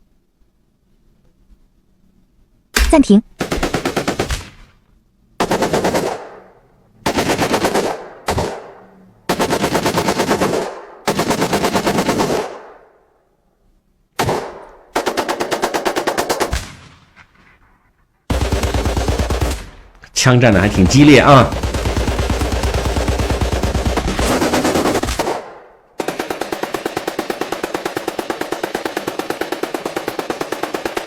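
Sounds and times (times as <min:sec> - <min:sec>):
automatic gunfire bursts: 0:03.4 - 0:04.6, 0:05.4 - 0:06.4, 0:07.0 - 0:12.7, 0:18.3 - 0:31.0.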